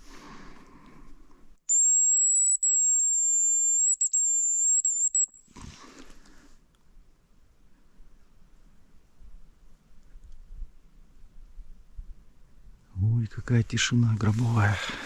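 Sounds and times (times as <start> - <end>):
high thin decoy whistle: 1.7 - 5.4.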